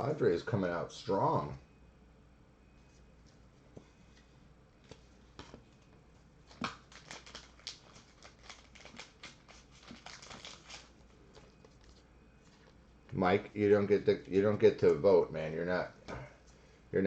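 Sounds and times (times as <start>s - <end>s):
cards and foil wrappers handled: 6.5s - 12.8s.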